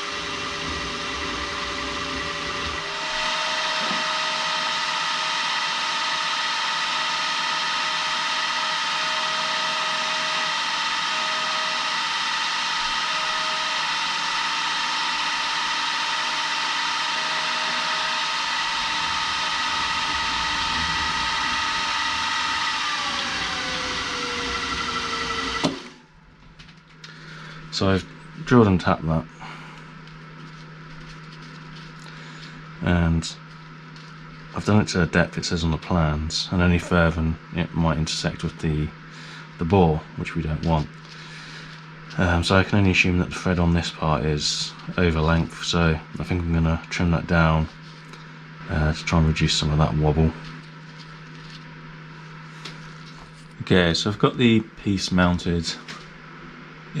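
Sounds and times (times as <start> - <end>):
machine motor drilling metal: 0.0 - 26.1.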